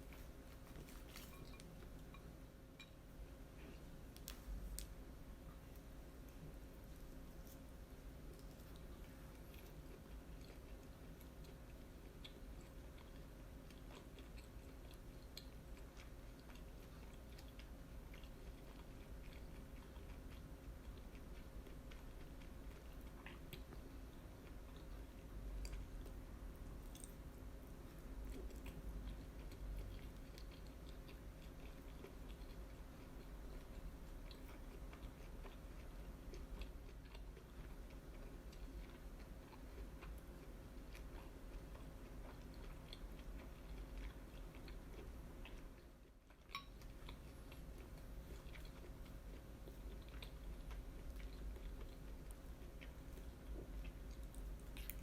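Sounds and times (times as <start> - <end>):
close-miked chewing: 0.0 - 2.9, 3.5 - 55.0
faint steady hum: 0.0 - 55.0.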